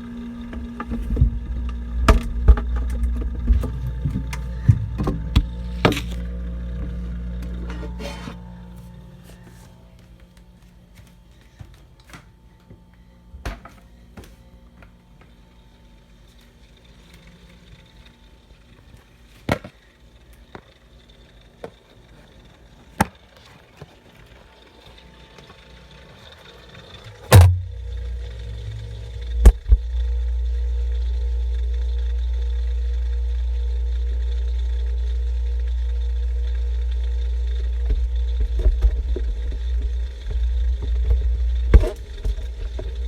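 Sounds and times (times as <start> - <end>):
mini fridge humming: 0.0 - 43.0
loud thump: 27.3 - 30.0.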